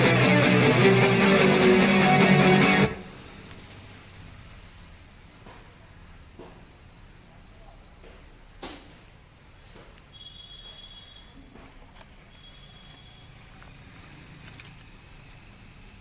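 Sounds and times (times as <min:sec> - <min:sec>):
guitar music: 0:00.0 - 0:03.1
bird chirping: 0:04.4 - 0:05.5, 0:07.6 - 0:08.5, 0:10.1 - 0:13.2.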